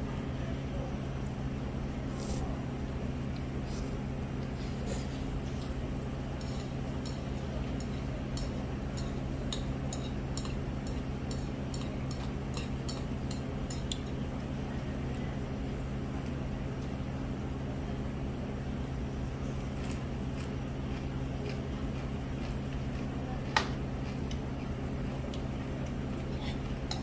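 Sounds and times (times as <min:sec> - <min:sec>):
steady low hum: 0:00.0 - 0:27.0
chopsticks clicking against dish: 0:06.4 - 0:14.2, 0:25.3 - 0:27.0.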